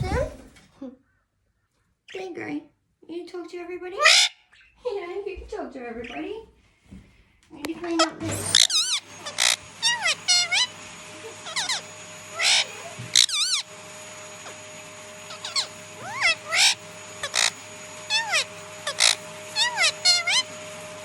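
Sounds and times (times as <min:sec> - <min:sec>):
parrots chirping and calling: 0:04.0 - 0:04.8, 0:07.7 - 0:21.0.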